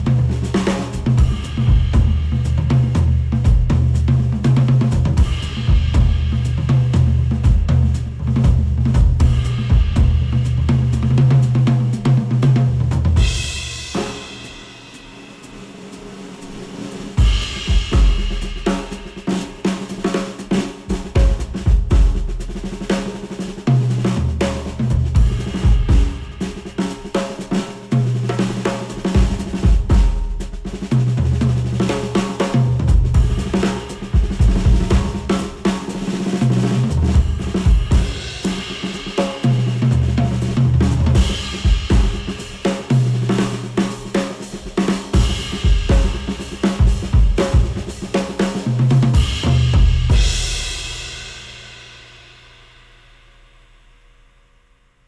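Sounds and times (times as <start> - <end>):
drum kit: 0.0 - 54.2
deep bass line: 1.2 - 11.2.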